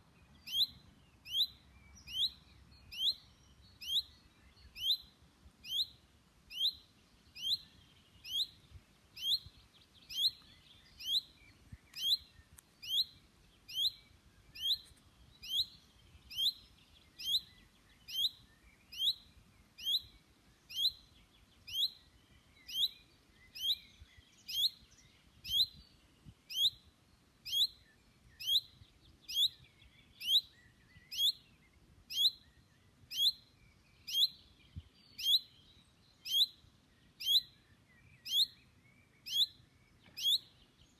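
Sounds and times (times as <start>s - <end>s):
chaffinch calling: 0.4s - 8.6s, 9.2s - 21.0s, 36.2s - 36.6s, 38.2s - 38.6s, 39.3s - 40.6s.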